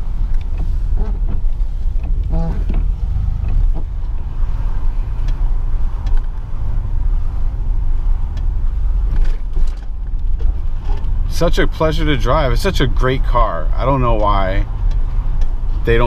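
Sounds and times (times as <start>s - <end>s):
car road and engine rumble: 0.0s - 16.0s.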